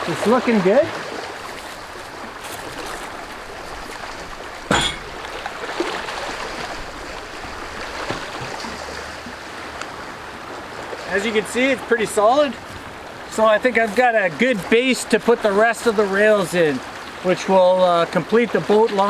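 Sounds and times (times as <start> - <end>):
rushing water: 0.0 - 19.0
sharp knock: 4.7 - 5.2.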